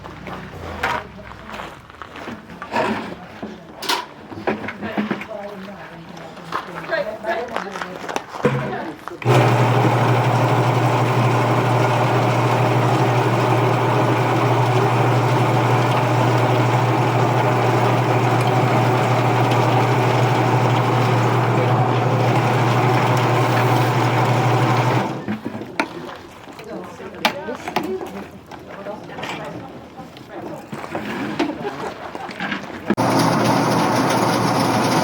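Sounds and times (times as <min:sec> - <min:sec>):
machine humming and whirring: 0:09.2 - 0:25.2, 0:33.0 - 0:35.0.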